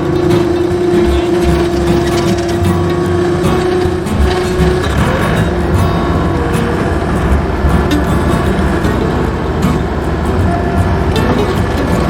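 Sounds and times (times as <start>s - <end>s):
background music: 0.0s - 12.0s
skid steer engine running: 0.0s - 12.0s.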